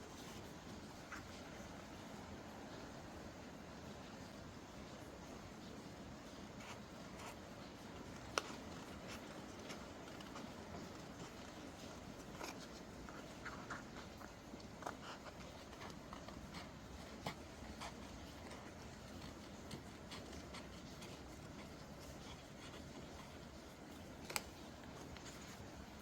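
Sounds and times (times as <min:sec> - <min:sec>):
paper rustling: 0:06.3 - 0:26.0.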